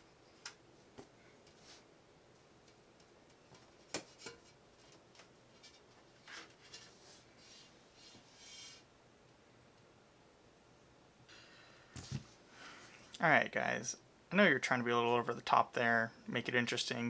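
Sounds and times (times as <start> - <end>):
soft rubbing or rustling: 4.1 - 8.9.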